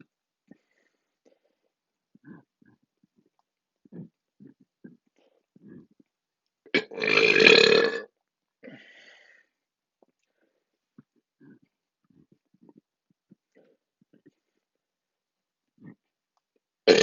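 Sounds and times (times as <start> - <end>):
faint throat noises: 0.0 - 9.0, 10.0 - 14.8, 15.7 - 16.2
person burping: 6.7 - 8.1.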